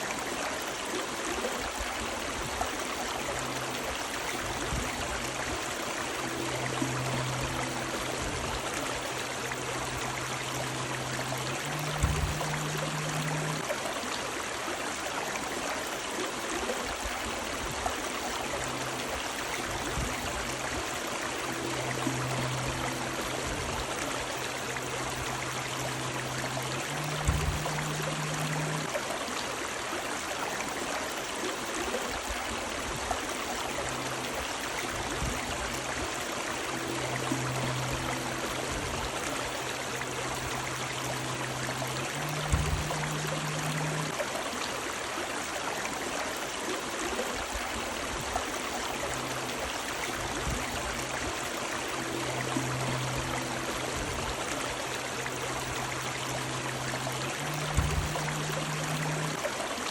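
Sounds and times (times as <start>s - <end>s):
river water over rocks: 0.0s - 59.9s
low hum: 2.6s - 13.8s, 18.0s - 29.0s, 33.3s - 44.2s, 48.6s - 59.5s
dull thump: 27.1s - 27.9s, 42.4s - 43.8s, 57.7s - 58.2s.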